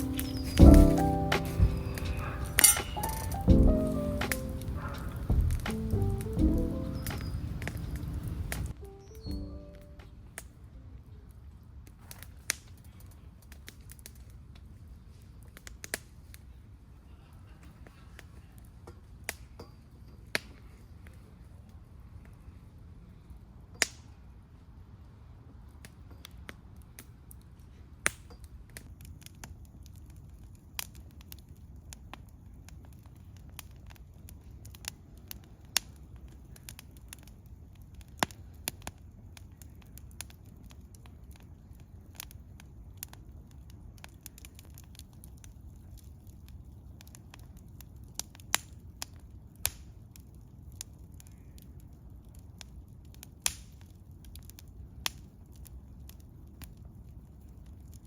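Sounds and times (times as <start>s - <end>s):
steady low rumble: 0.0s - 8.8s
wood campfire crackling: 0.0s - 58.0s.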